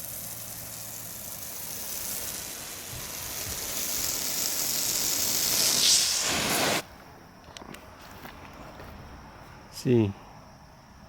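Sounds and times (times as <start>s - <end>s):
garden hose spraying water: 0.0s - 6.9s.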